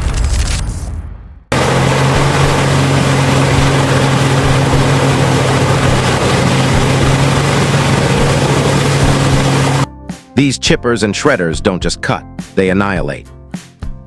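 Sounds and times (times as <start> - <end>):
rushing noise: 1.5 - 9.9
shredding machine engine drone: 1.5 - 9.9.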